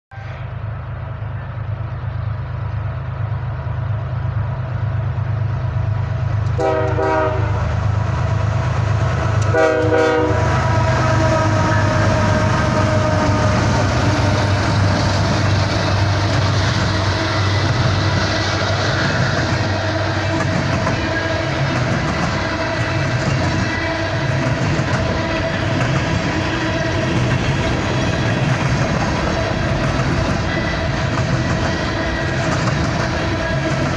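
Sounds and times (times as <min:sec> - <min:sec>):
train air horn blasts: 0:00.1 - 0:00.6, 0:06.5 - 0:07.8, 0:09.4 - 0:15.0
train engines rumbling: 0:00.1 - 0:33.9.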